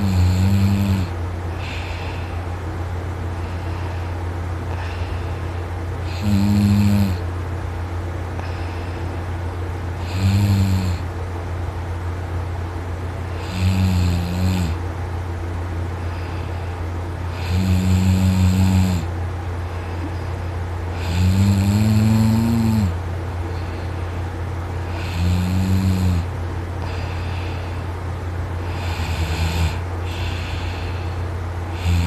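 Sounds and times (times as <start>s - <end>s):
man snoring loudly: 0.0s - 2.0s, 6.0s - 7.2s, 10.0s - 11.1s, 13.4s - 14.8s, 17.3s - 19.1s, 20.9s - 23.0s, 24.9s - 26.3s, 28.6s - 32.0s
steady low hum: 0.0s - 32.0s.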